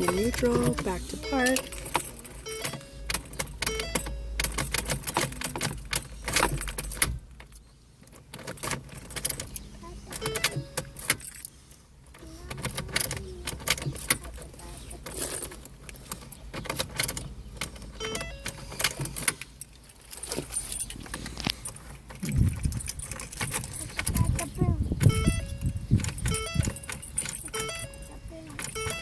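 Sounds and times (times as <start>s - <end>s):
keys jangling on a key ring: 0.0s - 7.0s, 18.0s - 29.0s.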